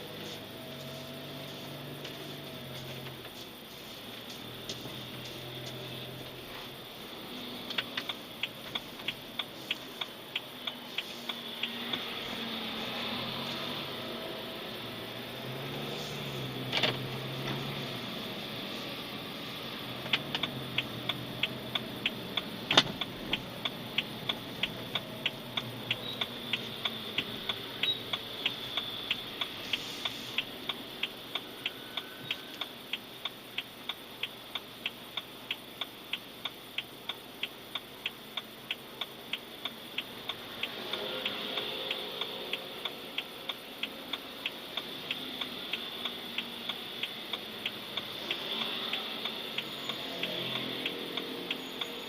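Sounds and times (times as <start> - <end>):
fast ticking from a car: 7.2 - 12.4, 20.0 - 52.0.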